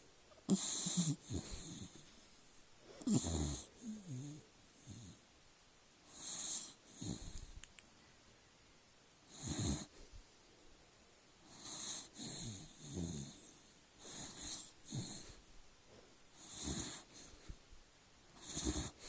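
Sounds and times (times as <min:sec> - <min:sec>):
dog snoring: 0:00.5 - 0:02.2, 0:03.0 - 0:05.2, 0:06.1 - 0:07.5, 0:09.3 - 0:10.0, 0:11.4 - 0:15.4, 0:16.4 - 0:17.6, 0:18.4 - 0:19.0.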